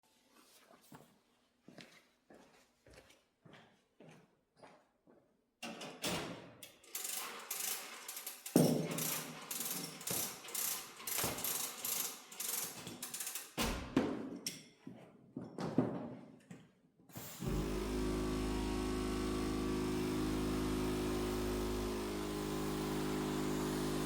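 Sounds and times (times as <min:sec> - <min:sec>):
mechanical clicking and rattling: 0:06.7 - 0:13.6.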